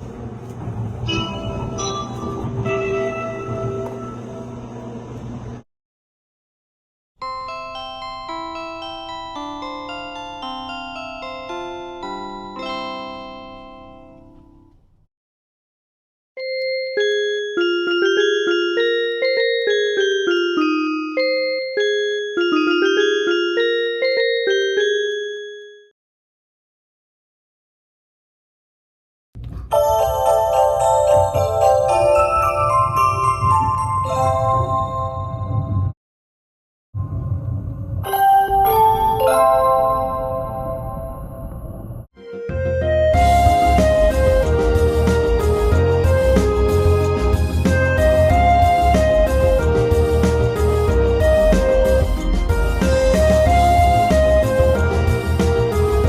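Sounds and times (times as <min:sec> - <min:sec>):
low train rumble: 0:00.0 - 0:05.6, 0:31.1 - 0:35.9, 0:37.0 - 0:42.0
electronic announcement chime: 0:01.1 - 0:04.6, 0:38.0 - 0:41.8.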